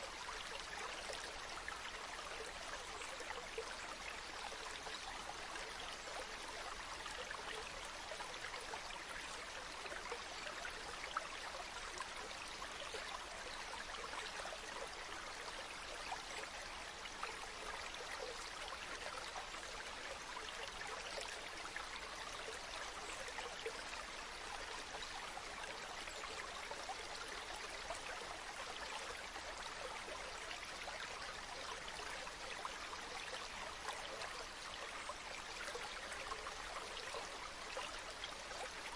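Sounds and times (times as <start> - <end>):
stream water flowing: 0.0 - 38.9.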